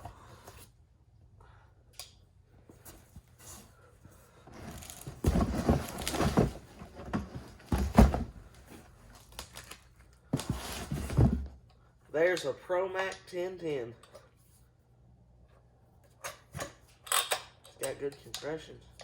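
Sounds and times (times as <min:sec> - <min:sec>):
rustling with knocks and thuds: 0:02.6 - 0:11.6.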